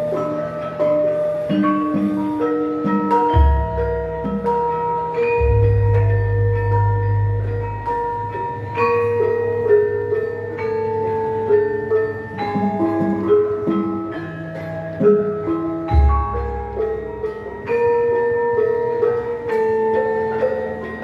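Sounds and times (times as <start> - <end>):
gamelan metallophones and gong-chimes: 0.0 - 21.0
deep low gong tone: 5.4 - 7.9.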